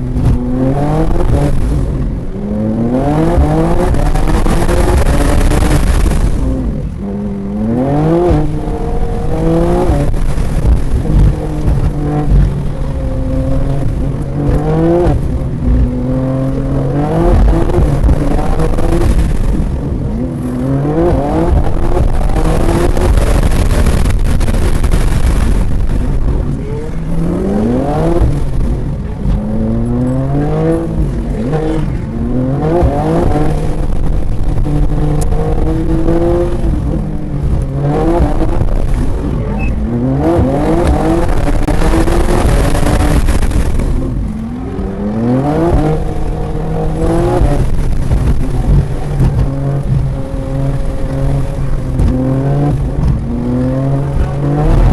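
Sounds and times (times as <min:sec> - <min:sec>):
car engine revving: 0:00.0 - 0:54.9.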